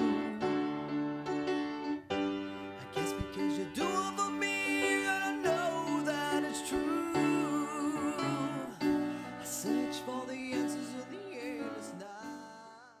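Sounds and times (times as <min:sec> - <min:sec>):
person singing: 0:00.0 - 0:01.5, 0:02.6 - 0:13.0.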